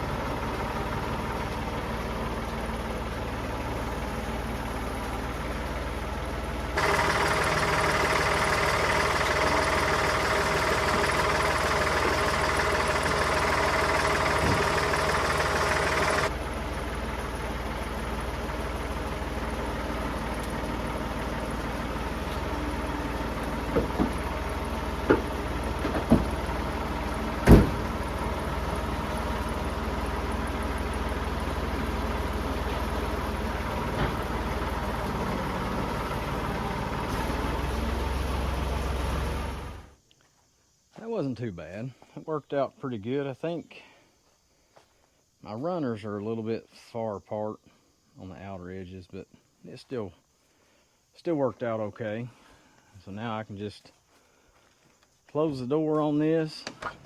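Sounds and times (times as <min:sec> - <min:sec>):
tractor engine revving: 0:00.0 - 0:40.0.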